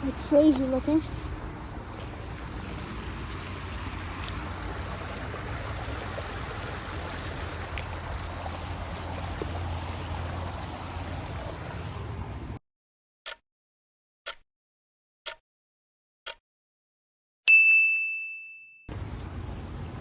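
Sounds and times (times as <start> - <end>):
water flowing in a stream: 0.0 - 12.6, 18.9 - 20.0.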